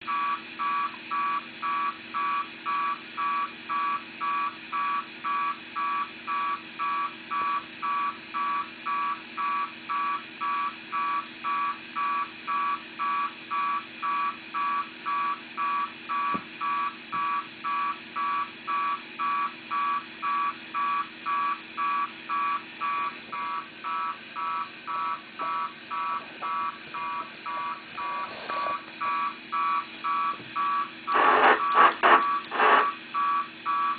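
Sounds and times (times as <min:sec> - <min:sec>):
steady low hum: 0:00.1 - 0:33.9
rapid electronic beeps: 0:19.3 - 0:33.9.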